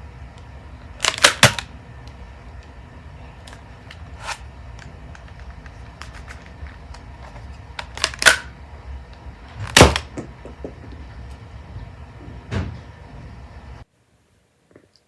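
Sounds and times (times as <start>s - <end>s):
plastic toy blaster clicks: 1.0s - 1.7s, 7.8s - 8.5s.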